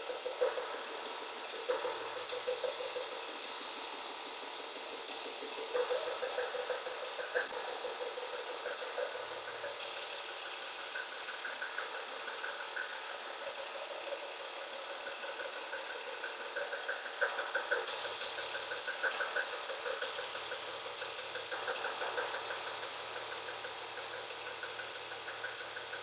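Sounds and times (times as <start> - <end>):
car engine knocking: 0.1 - 26.0.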